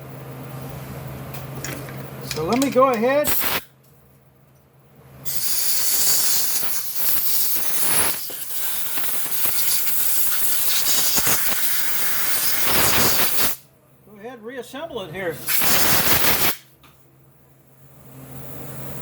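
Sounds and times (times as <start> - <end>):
pressurized air hiss: 5.2 - 13.6, 15.4 - 16.6.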